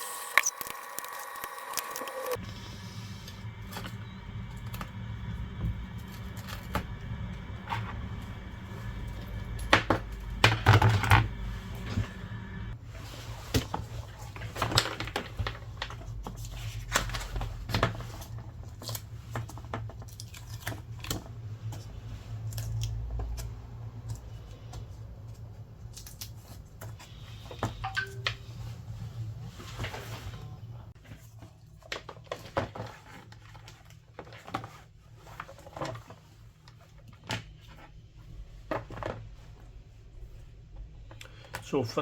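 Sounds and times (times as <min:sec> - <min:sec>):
steady low hum: 0:02.4 - 0:12.8.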